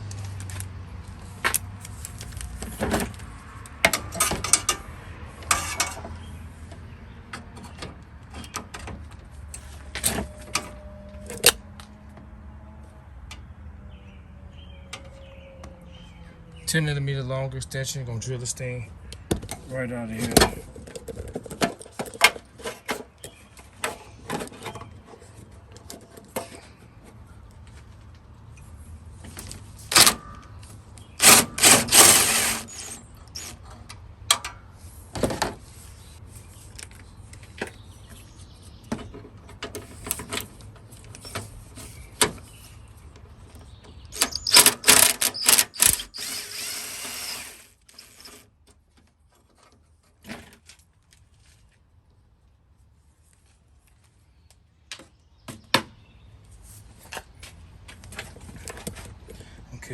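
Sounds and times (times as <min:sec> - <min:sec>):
tool handling clicks and knocks: 0:01.4 - 0:12.3, 0:38.8 - 0:50.8
cordless drill spinning bolts: 0:31.2 - 0:33.5, 0:44.2 - 0:48.4.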